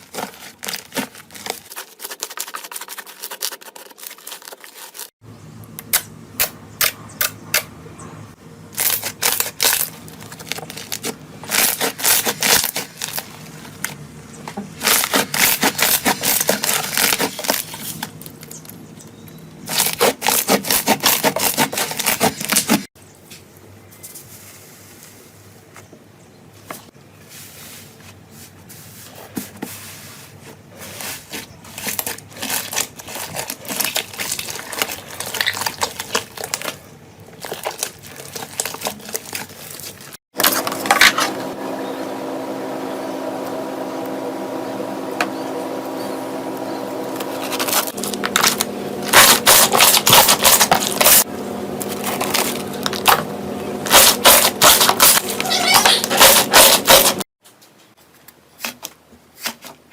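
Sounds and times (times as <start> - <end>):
steady hum with held tones: 40.4 - 55.4.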